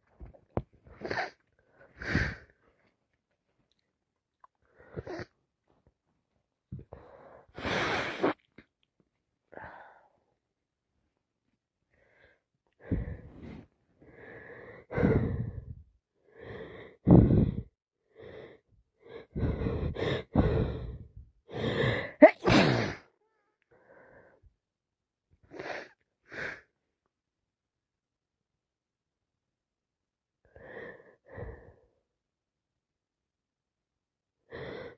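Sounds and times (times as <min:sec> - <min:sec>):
heavy wheezy breaths: 0:00.9 - 0:02.7, 0:06.8 - 0:08.4, 0:12.0 - 0:22.2, 0:30.5 - 0:32.0
woman sneezing: 0:22.2 - 0:23.1.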